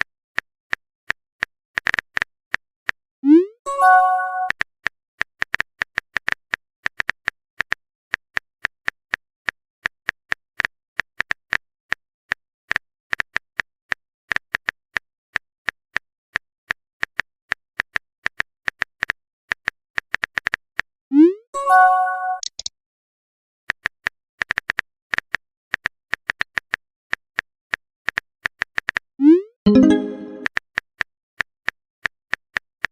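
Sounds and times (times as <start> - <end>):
keyboard typing clicks: 21.9 - 22.7, 29.7 - 30.5.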